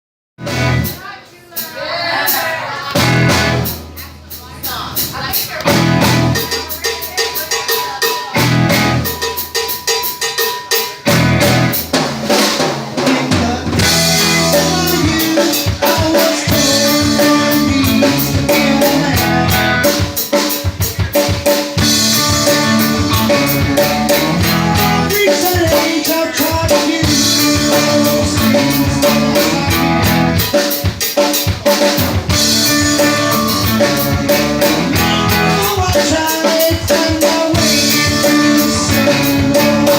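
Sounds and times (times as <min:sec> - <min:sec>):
live band playing instrumental: 0:00.4 - 0:39.9.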